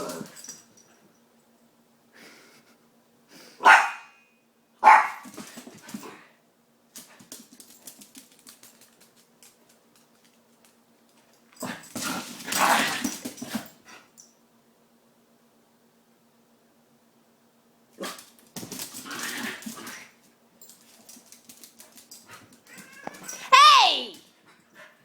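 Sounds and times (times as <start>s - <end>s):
dog barking: 3.6s - 4.2s, 4.8s - 5.2s.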